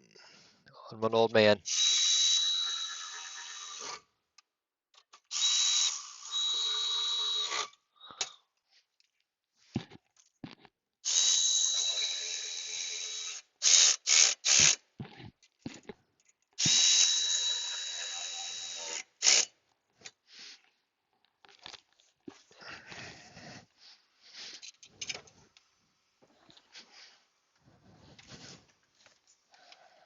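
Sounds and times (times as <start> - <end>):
power tool whining: 1.7 - 4.0, 5.3 - 7.8, 11.0 - 14.8, 16.6 - 19.5
power tool blips tightening bolts: 5.1 - 8.3, 11.0 - 14.8, 16.6 - 19.5.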